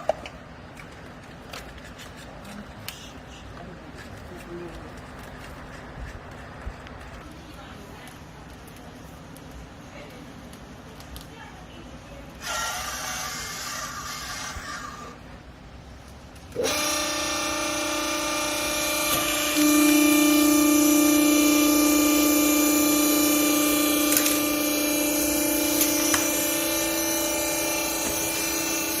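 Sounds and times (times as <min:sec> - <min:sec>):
electric motor and hydraulic pump whine: 0:12.2 - 0:15.5, 0:16.1 - 0:29.0.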